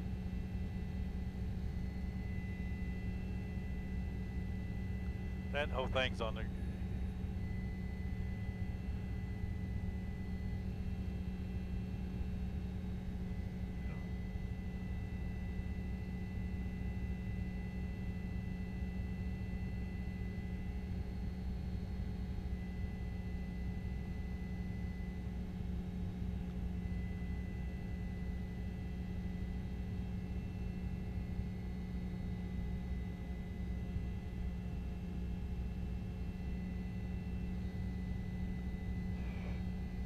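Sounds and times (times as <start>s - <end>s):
steady low hum: 0.0s - 18.5s, 19.2s - 40.0s
faint high steady tones: 5.6s - 6.5s.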